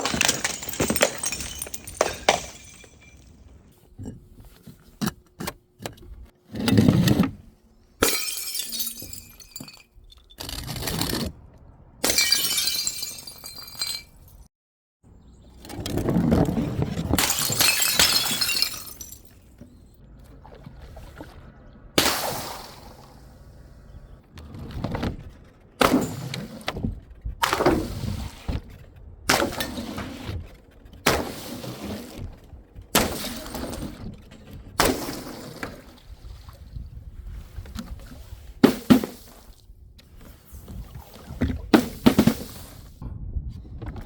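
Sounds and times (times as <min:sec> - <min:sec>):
glass bottles smashing: 0:00.0 - 0:03.7, 0:08.0 - 0:10.4, 0:12.0 - 0:14.5, 0:17.2 - 0:19.4.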